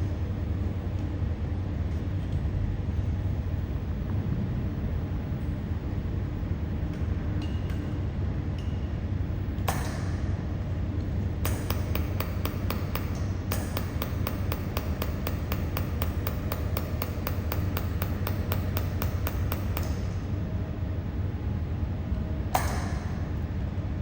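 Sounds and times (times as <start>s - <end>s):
laser welder ticking: 11.4s - 20.2s.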